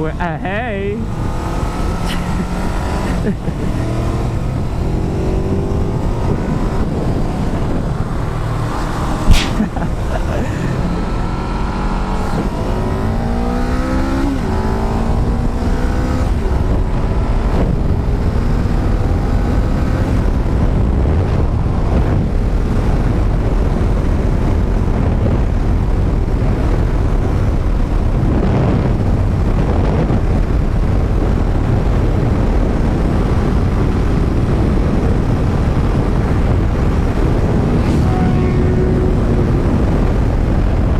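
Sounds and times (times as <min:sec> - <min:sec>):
wind and road noise: 0:00.0 - 0:40.9
motorcycle engine accelerating: 0:01.0 - 0:23.6, 0:30.3 - 0:40.9
sharp crack: 0:09.1 - 0:10.3.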